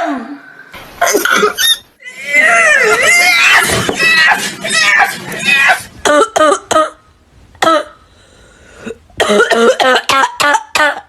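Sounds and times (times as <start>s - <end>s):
person coughing: 1.0s - 1.7s, 9.2s - 11.0s.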